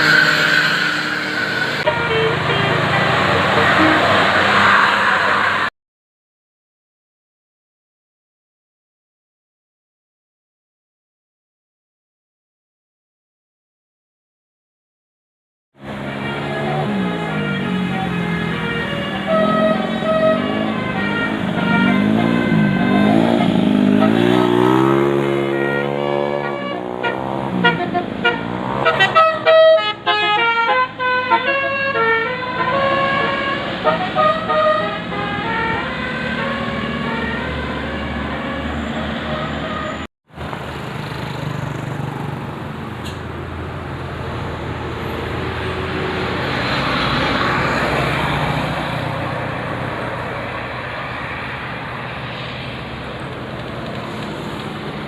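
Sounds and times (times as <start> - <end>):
bus musical horn playing a tune: 0.0 - 5.2, 15.9 - 40.1
vehicle engine and road noise: 0.0 - 5.7, 15.8 - 55.0.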